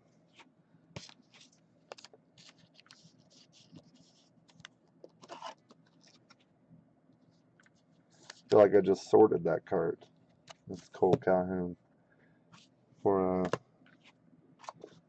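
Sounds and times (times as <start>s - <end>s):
trading cards being handled: 0.3s - 6.5s, 10.4s - 11.3s, 13.4s - 15.0s.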